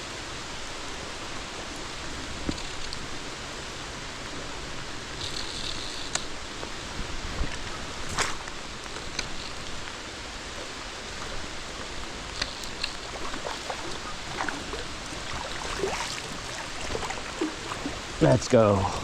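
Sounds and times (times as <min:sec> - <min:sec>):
creek flowing: 0:06.3 - 0:19.0
rain falling: 0:06.4 - 0:19.0
sharp water splashes: 0:12.6 - 0:18.4.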